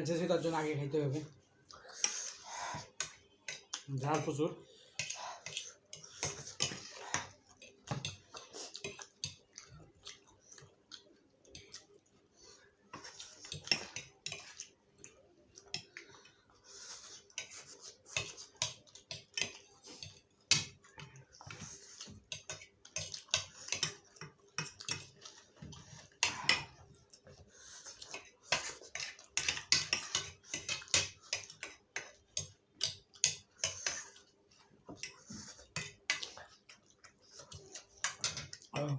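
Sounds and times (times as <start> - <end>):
person chewing noodles: 1.5 - 3.9, 4.7 - 38.8
cutlery clicking on a dish: 17.4 - 20.8, 22.2 - 25.3, 28.2 - 34.0.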